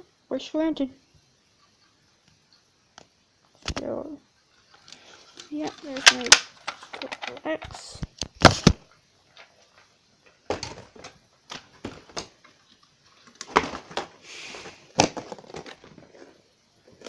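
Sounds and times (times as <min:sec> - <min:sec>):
plastic and metal clicks and knocks: 0:05.6 - 0:08.4.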